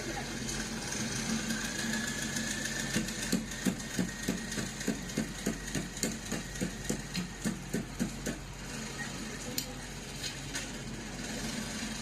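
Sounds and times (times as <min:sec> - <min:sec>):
dull knocks of food preparation: 0:02.9 - 0:08.5.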